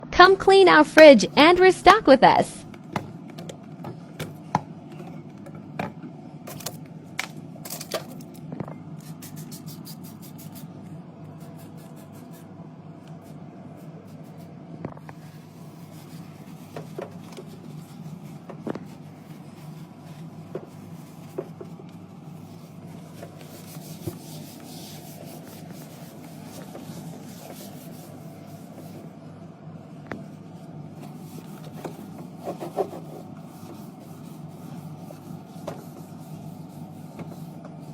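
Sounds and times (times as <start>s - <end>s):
fridge hum: 0.0s - 37.9s
rubbing and wiping: 9.1s - 10.7s, 11.3s - 12.6s, 13.2s - 29.2s, 30.2s - 37.9s.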